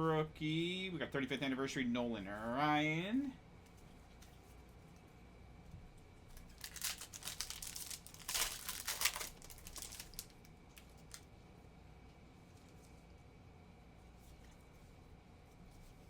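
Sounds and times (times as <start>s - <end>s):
foil wrapper tearing and crinkling: 6.3s - 11.2s
light rustles of handling: 13.9s - 16.0s.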